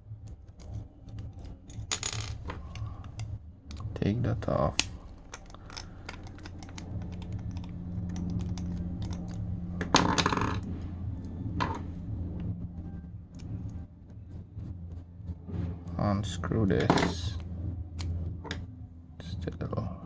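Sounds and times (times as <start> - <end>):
steady low hum: 0.0 - 20.0
parts clattering: 0.6 - 10.8
reel handle parts clicking: 4.7 - 9.4.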